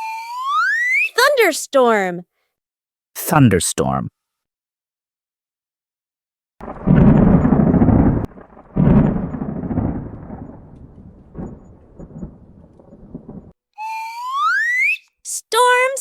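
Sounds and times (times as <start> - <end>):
thunder rolling: 6.6 - 13.6.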